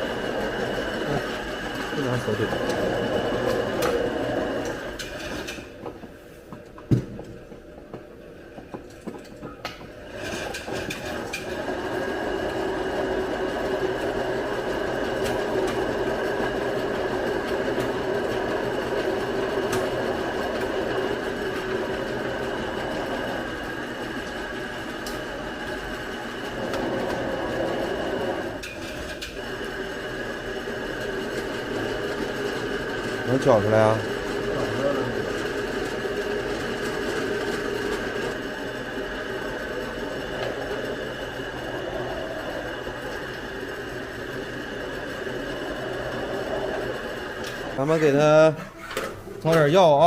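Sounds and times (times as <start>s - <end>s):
electric meat grinder grinding: 0.0s - 5.8s, 9.9s - 48.4s
knock in grinder: 6.5s - 9.9s.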